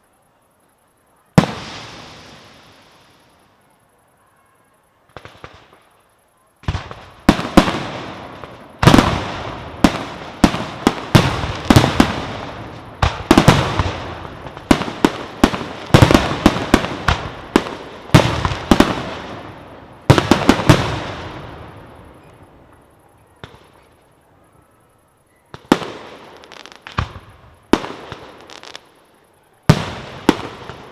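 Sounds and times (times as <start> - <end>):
fireworks bursting with echo: 1.3 - 3.8, 5.0 - 30.9
faint firework pops: 25.5 - 28.8.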